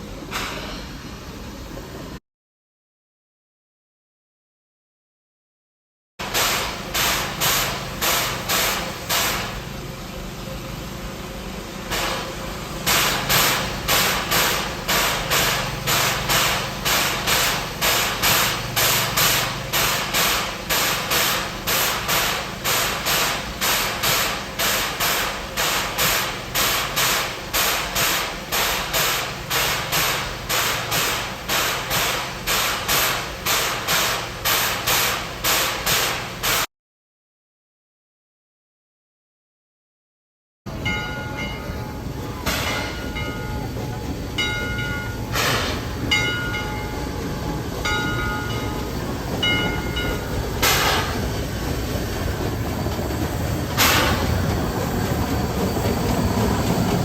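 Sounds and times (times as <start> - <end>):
steady steam hiss: 6.2 - 36.7, 41.9 - 57.0
steam locomotive exhaust chuffing: 6.2 - 36.7, 40.7 - 57.0.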